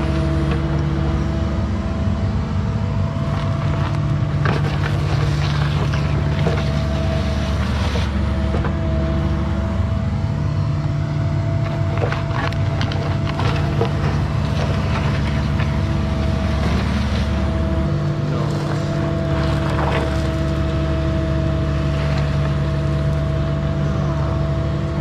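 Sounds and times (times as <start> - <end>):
excavator diesel engine running: 0.0 - 25.0
bucket knocking and scraping ground: 3.3 - 8.8, 11.6 - 20.9.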